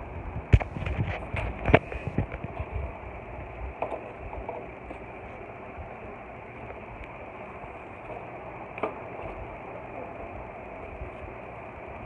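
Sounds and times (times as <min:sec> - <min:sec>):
steady background hiss: 0:00.0 - 0:12.0.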